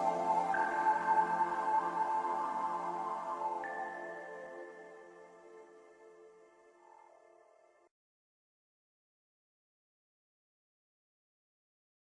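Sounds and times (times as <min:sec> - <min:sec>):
faint music with held notes: 0:00.0 - 0:07.9.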